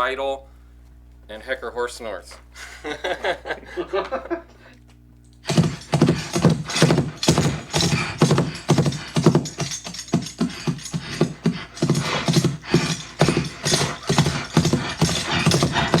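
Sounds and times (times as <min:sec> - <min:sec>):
horse hoofbeats clip-clopping: 0:05.5 - 0:16.0.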